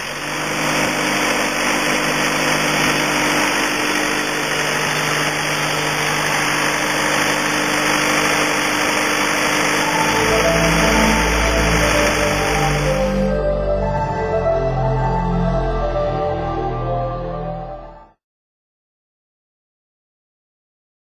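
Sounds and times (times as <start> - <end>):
paver engine idling: 0.0 - 15.0.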